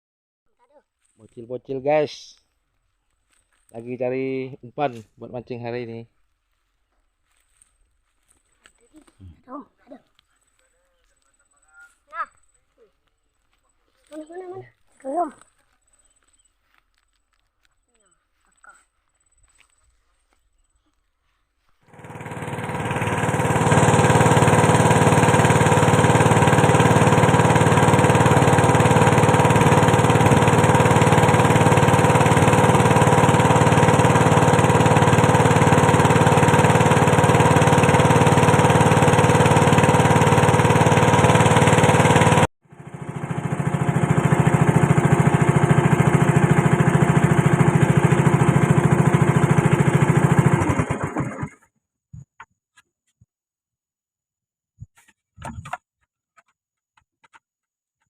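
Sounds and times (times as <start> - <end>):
small engine running: 21.8 - 51.7.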